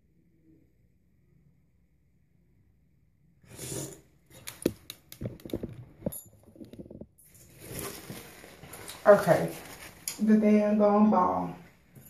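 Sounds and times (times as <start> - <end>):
hands fumbling near microphone: 4.4 - 8.8.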